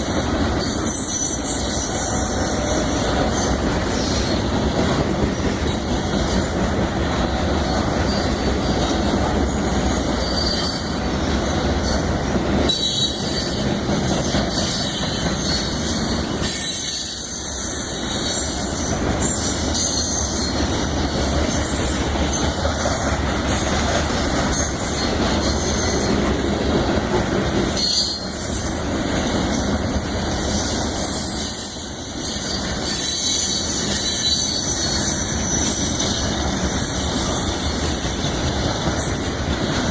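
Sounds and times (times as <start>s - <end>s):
steel train wheels on rail: 0.0s - 39.9s
high-pitched wheel squeals: 0.5s - 2.3s, 10.2s - 11.0s, 12.7s - 21.0s, 27.8s - 28.6s, 31.0s - 37.5s.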